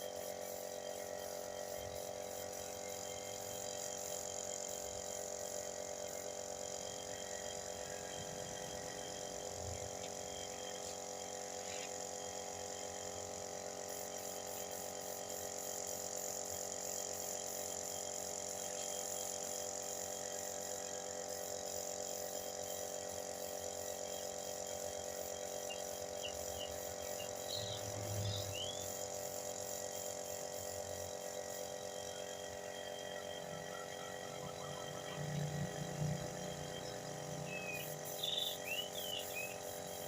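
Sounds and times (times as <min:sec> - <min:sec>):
steady mechanical hum: 0:00.0 - 0:40.0
high hiss: 0:32.2 - 0:40.0.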